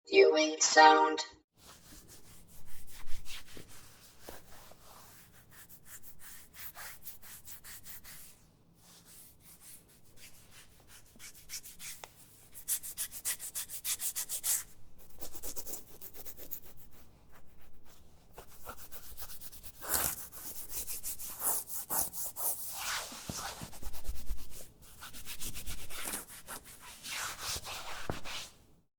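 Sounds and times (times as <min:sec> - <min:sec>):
fingernails scratching skin: 0:18.6 - 0:22.7.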